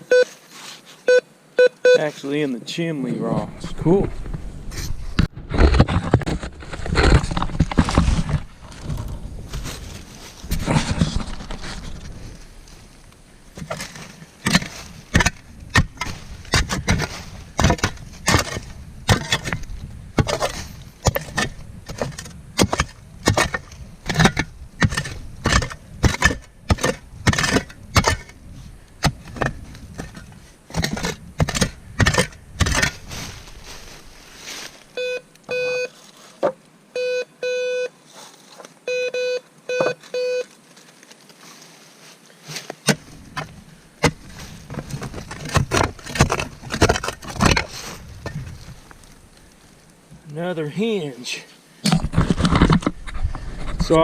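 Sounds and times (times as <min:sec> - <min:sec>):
metal detector beeps: 0:00.0 - 0:00.4, 0:01.1 - 0:02.0, 0:35.0 - 0:35.9, 0:37.0 - 0:37.9, 0:38.8 - 0:40.5
digging among rocks: 0:03.3 - 0:36.6, 0:39.8 - 0:51.2, 0:51.8 - 0:54.0.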